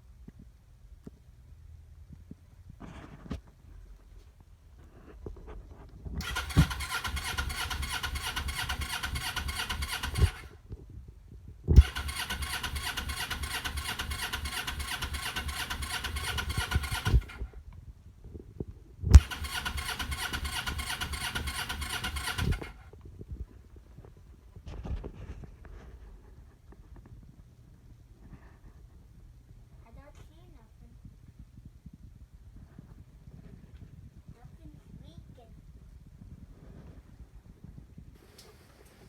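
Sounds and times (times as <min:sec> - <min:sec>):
electric starter cranking engine: 0:06.2 - 0:10.6, 0:11.8 - 0:17.5, 0:19.1 - 0:22.8.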